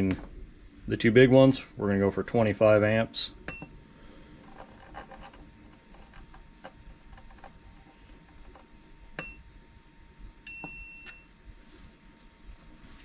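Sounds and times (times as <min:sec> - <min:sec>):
electronic beeps: 0:03.5 - 0:03.8, 0:09.2 - 0:09.5.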